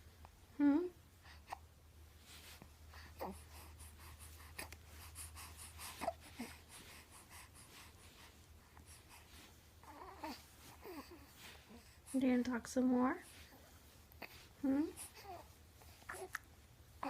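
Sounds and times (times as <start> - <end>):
baby breathing: 2.2 - 12.2.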